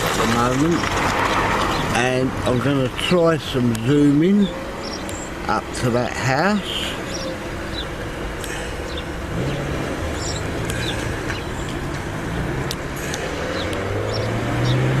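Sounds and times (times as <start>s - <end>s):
car engine running: 0.0s - 15.0s
bird chirps: 3.8s - 5.4s, 6.8s - 8.0s, 8.8s - 11.8s.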